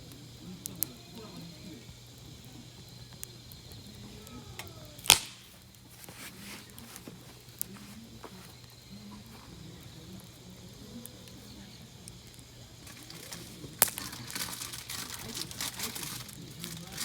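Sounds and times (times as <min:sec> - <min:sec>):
wood fire crackling: 0:00.0 - 0:17.0
loud sharp pop: 0:05.0 - 0:05.6.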